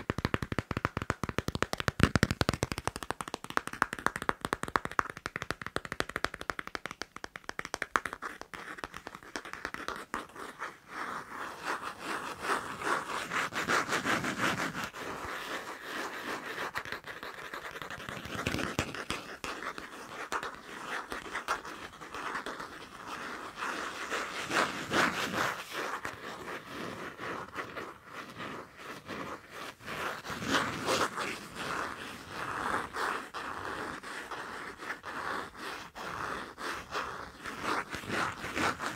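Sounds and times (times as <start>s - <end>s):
sharp taps on passport: 0.0s - 10.3s
rapid scratching on passport: 0.0s - 38.9s.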